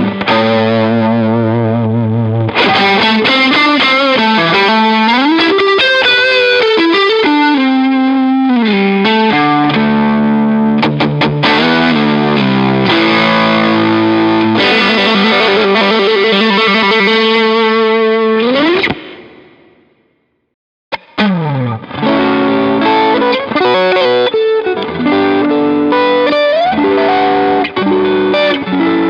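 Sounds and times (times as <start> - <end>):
distorted electric guitar lead: 0.0 - 20.2, 20.9 - 29.0.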